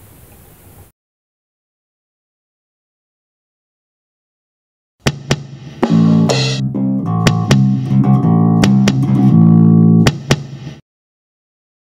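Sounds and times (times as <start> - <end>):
guitar low notes: 5.8 - 10.2
percussive guitar clicks: 7.0 - 10.7.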